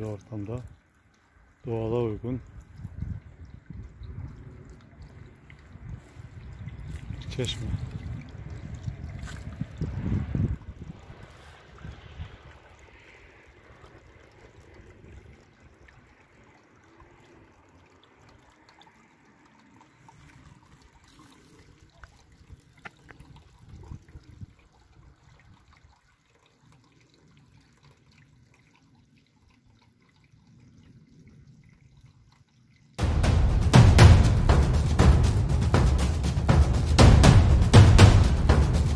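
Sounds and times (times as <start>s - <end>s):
small drips and knocks: 0.0s - 11.5s, 13.7s - 33.0s
faint water trickle: 0.0s - 33.0s
loud music: 33.0s - 38.9s.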